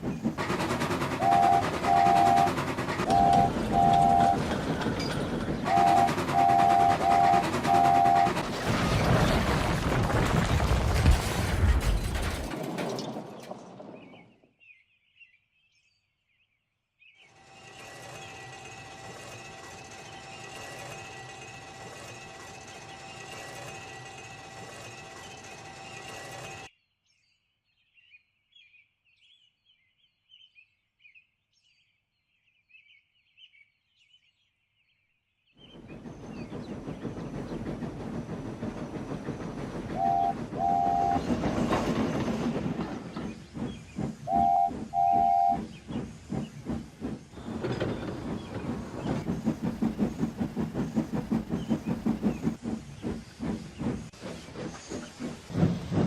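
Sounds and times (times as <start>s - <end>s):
steam locomotive chuffing: 0.0s - 10.0s, 17.3s - 26.7s, 35.6s - 56.0s
steam whistle toots: 1.2s - 4.4s, 5.7s - 8.4s, 40.0s - 41.4s, 44.3s - 45.7s
steam hissing: 36.2s - 56.0s.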